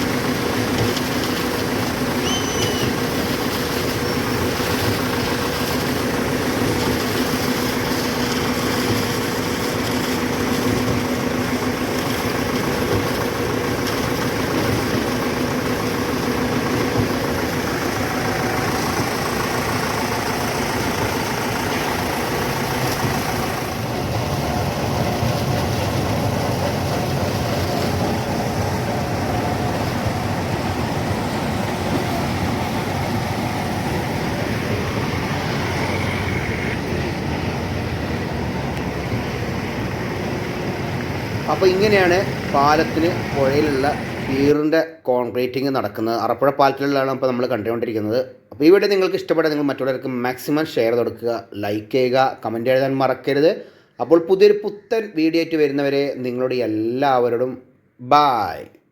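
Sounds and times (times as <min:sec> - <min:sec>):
diesel machinery droning: 0:00.0 - 0:44.6.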